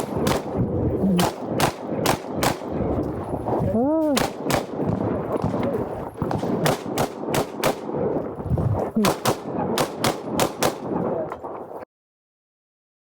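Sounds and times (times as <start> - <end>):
pistol shots: 0.0 - 2.8, 4.1 - 8.2, 9.0 - 11.1.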